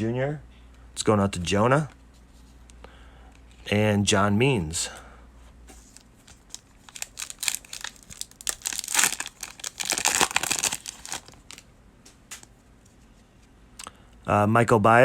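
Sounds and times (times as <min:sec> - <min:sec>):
foil wrapper crinkling: 0:05.8 - 0:11.7.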